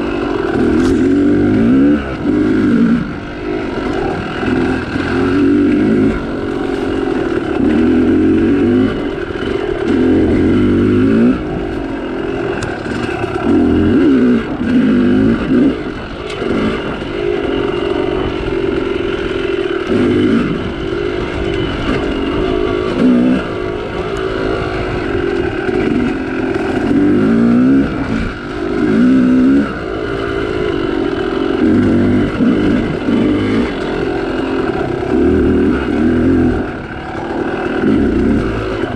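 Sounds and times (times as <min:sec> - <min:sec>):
two-stroke dirt bike revving: 0:00.0 - 0:38.9.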